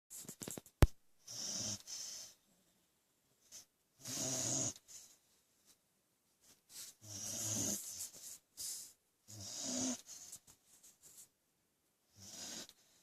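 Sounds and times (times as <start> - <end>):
dog snoring: 1.3 - 2.3, 4.0 - 5.1, 7.0 - 8.0, 9.3 - 10.4, 12.1 - 13.0.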